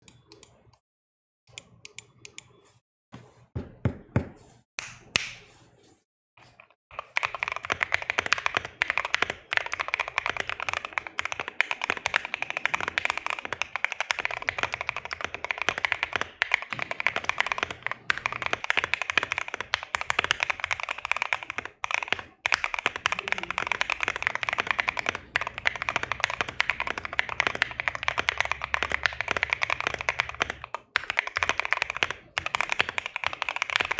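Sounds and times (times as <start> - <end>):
keyboard typing: 0.0 - 0.6, 6.9 - 33.9.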